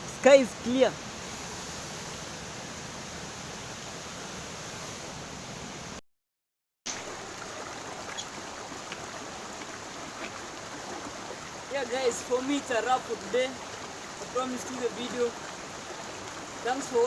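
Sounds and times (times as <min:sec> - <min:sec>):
flowing river water: 0:06.9 - 0:17.0.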